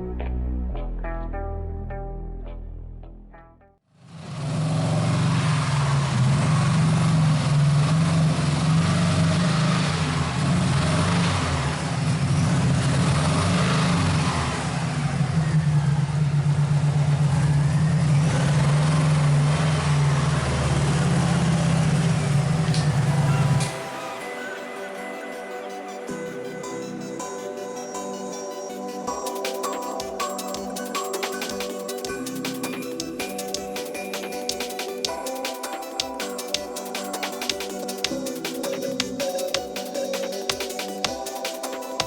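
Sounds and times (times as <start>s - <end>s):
road and wind noise: 4.1s - 24.1s
car engine droning: 4.1s - 24.2s.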